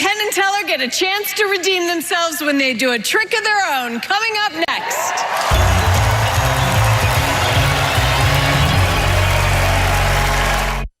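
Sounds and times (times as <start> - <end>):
bumper music with low drone: 5.5 - 10.9.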